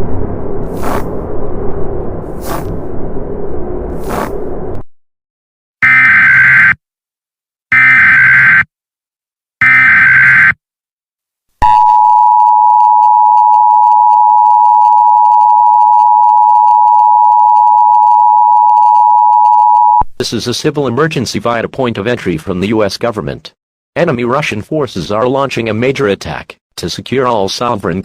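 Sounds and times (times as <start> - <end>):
buzzing data tone bursts: 5.8 - 6.8, 9.6 - 10.6.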